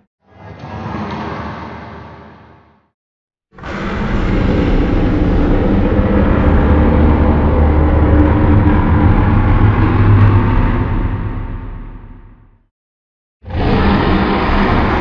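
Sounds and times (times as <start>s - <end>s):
loud creature rumbling: 3.6s - 11.5s, 13.4s - 15.0s.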